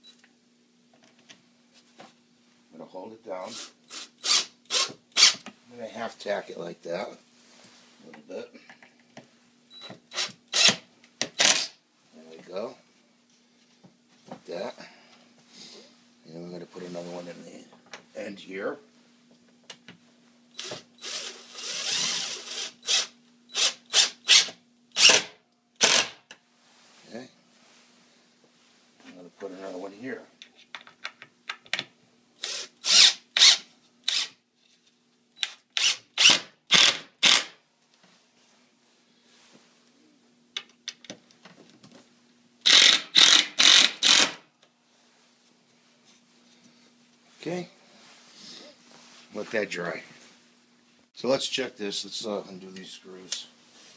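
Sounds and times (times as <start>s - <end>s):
power drill driving a screw: 3.5s - 5.4s, 10.1s - 11.8s, 20.6s - 26.2s, 32.4s - 34.4s, 35.4s - 37.6s, 42.6s - 44.4s.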